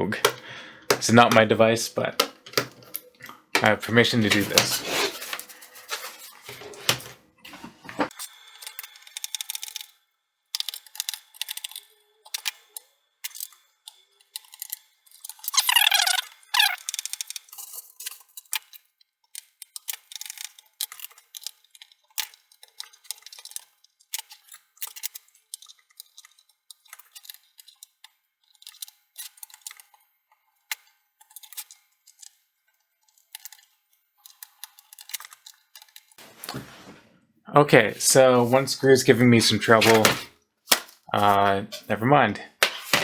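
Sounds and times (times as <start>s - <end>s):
screwdriver clicking on plastic case: 0.2s - 1.4s, 2.2s - 3.0s
short squeak: 15.5s - 16.8s.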